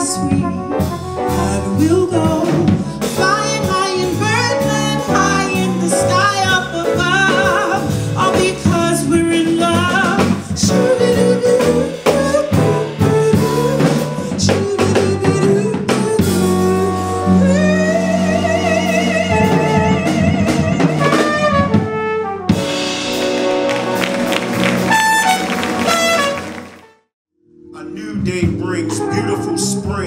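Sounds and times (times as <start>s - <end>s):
horn holding long notes: 0.0s - 6.3s, 16.2s - 27.1s, 27.7s - 30.0s
drum kit: 0.0s - 27.0s
bass: 0.0s - 30.0s.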